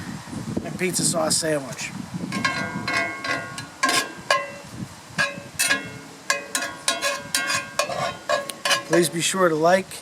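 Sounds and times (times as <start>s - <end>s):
metal spatula clinking in pan: 5.2s - 9.1s.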